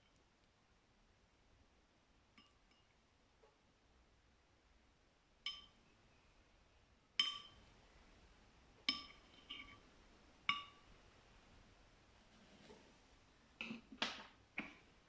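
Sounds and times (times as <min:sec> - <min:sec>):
glass clinking: 0:05.5 - 0:05.8, 0:07.2 - 0:07.6, 0:08.8 - 0:09.8, 0:10.5 - 0:10.9.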